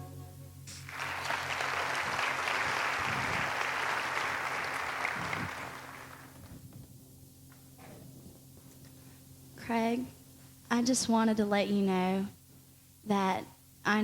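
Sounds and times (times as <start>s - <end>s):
held music chord: 0.0s - 0.8s
audience applauding: 0.7s - 6.4s.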